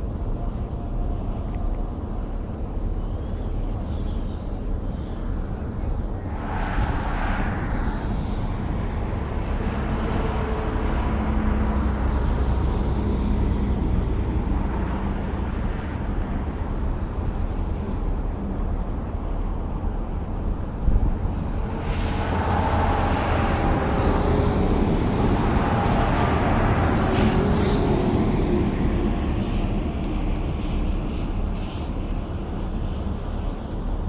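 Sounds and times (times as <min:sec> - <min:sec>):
road traffic rumble: 0:00.0 - 0:34.0
vehicle passing close by: 0:21.6 - 0:29.4.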